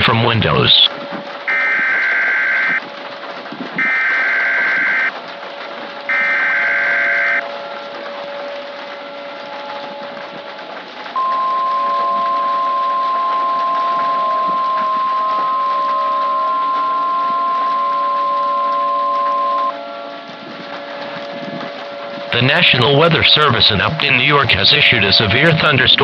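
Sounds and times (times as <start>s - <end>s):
buzzy digital data bursts: 1.5s - 2.8s, 3.8s - 5.1s, 6.1s - 7.4s, 11.2s - 19.7s.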